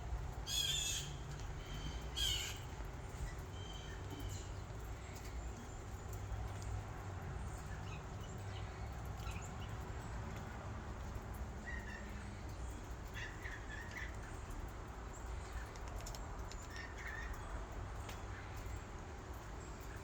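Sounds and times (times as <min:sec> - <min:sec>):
birds chirping: 0:00.5 - 0:10.2.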